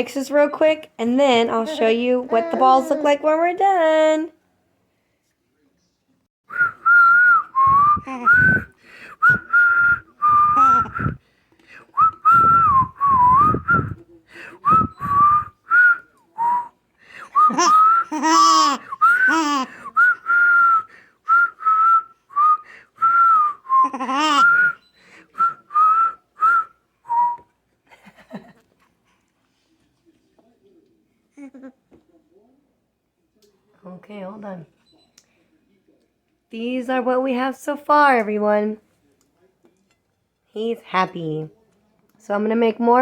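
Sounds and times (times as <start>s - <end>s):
person whistling a tune: 6.5s - 11.2s, 12.0s - 14.0s, 14.6s - 16.7s, 18.8s - 27.5s.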